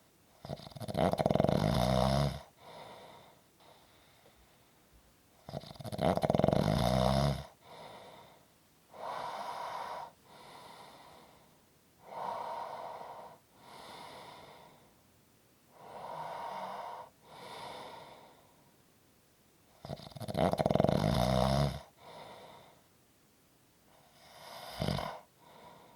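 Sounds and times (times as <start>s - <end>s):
loud low snore: 0.4s - 2.5s, 5.5s - 7.6s, 19.8s - 21.9s, 24.2s - 25.3s
airy breathing: 7.6s - 14.9s.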